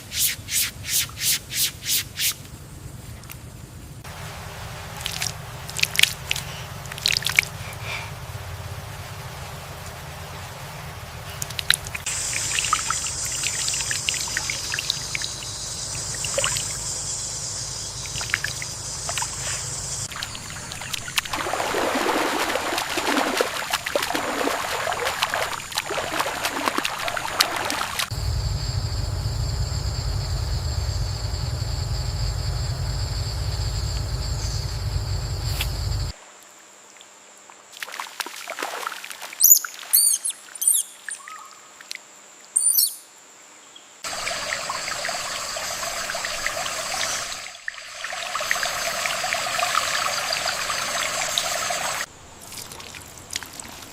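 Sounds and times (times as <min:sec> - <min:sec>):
low steady rumble: 0:02.4 - 0:27.4, 0:28.0 - 0:36.2
water trickling and splashing: 0:04.0 - 0:28.2, 0:37.6 - 0:41.1, 0:44.0 - 0:53.9
short bird chirps: 0:42.6 - 0:43.1.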